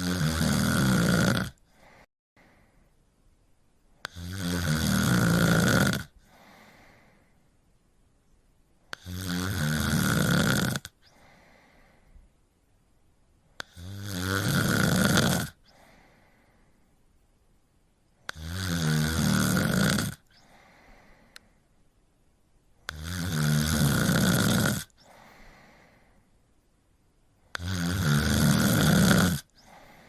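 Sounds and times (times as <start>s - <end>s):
cat snoring: 0.0s - 1.6s, 4.0s - 6.5s, 8.9s - 11.3s, 13.6s - 16.0s, 18.3s - 20.6s, 22.9s - 25.3s, 27.5s - 29.9s
faint breath: 1.6s - 3.0s, 6.2s - 7.6s, 11.0s - 12.4s, 15.6s - 17.1s, 20.3s - 21.8s, 25.0s - 26.5s, 29.5s - 30.0s.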